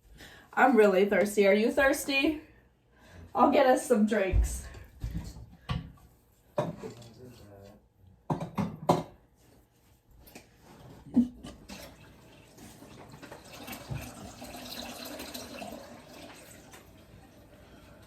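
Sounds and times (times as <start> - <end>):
knock: 8.3 - 9.2
liquid pouring into a glass: 11.7 - 17.4.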